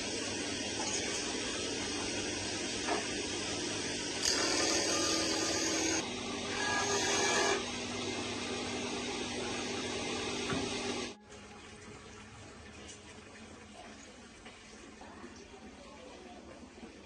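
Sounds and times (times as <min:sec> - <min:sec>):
small motor running: 0:04.2 - 0:09.0.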